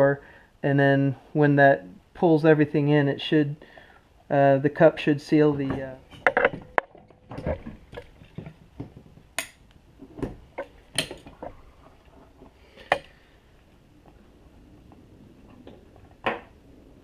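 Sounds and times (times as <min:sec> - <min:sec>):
tools and parts clicking: 0:06.1 - 0:08.6.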